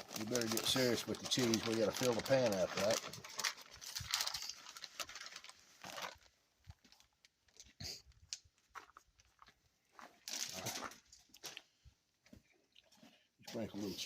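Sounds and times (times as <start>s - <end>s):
shredded cheese rustling: 0.0s - 6.3s.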